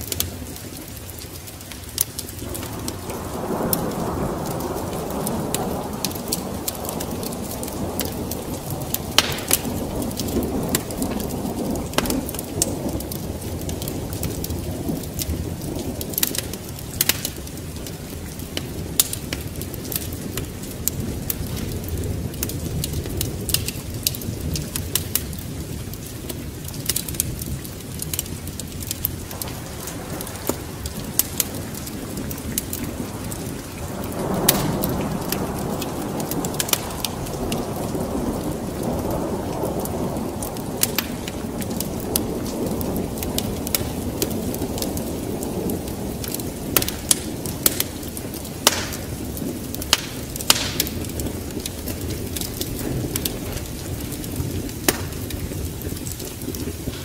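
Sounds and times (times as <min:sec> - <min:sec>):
low rumble of thunder: 0:00.0 - 0:57.0
steady rain: 0:00.0 - 0:57.0
wood fire crackling and popping: 0:00.0 - 0:57.0.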